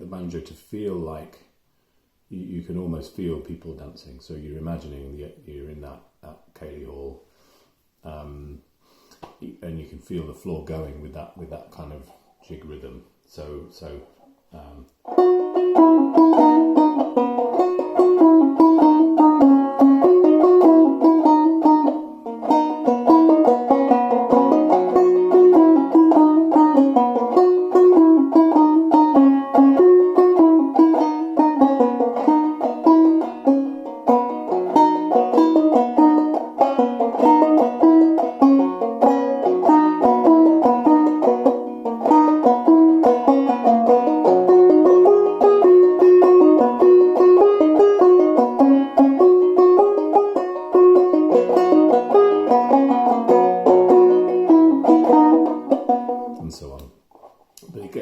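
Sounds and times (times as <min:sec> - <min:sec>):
banjo playing a jig: 0:13.8 - 0:57.3.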